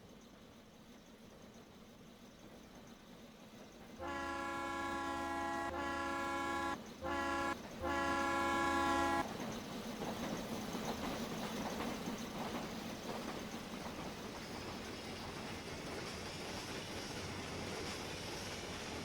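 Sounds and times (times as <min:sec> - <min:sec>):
steam locomotive whistle: 0:04.0 - 0:09.4.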